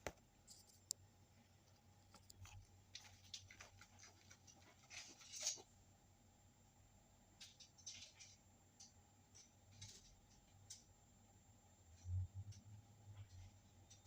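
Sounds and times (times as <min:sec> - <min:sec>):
rustling scrape: 0:02.4 - 0:05.7.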